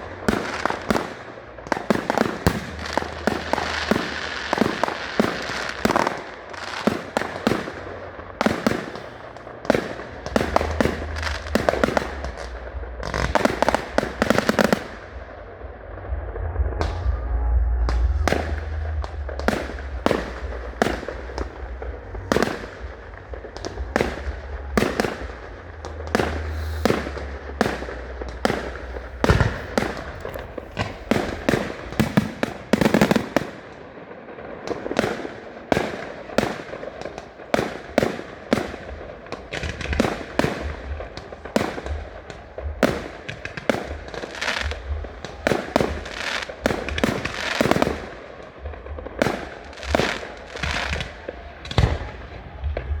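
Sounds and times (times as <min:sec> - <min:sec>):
low rumble: 0:00.0 - 0:06.5, 0:09.0 - 0:32.8, 0:48.5 - 0:53.0
fireworks bangs: 0:00.0 - 0:53.0.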